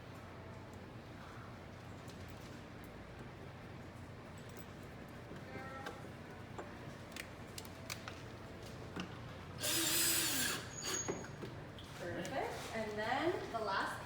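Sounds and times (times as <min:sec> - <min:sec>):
power drill driving fastener: 0:09.6 - 0:11.1.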